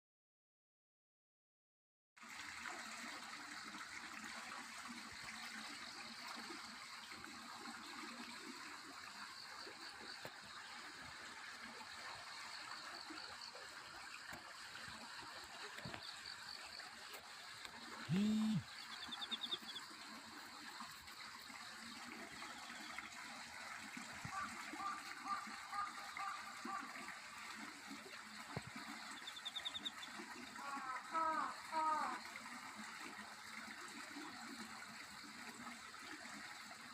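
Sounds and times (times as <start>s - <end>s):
stream running: 2.2s - 36.9s
bird high trills: 18.1s - 19.8s.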